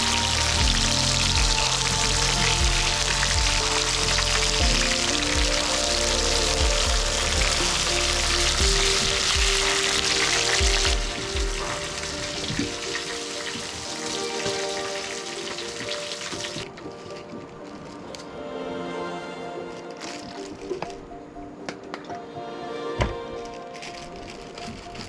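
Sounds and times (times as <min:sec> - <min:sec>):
fish frying in hot oil: 0:00.0 - 0:14.2
music with steady beat: 0:00.0 - 0:14.7.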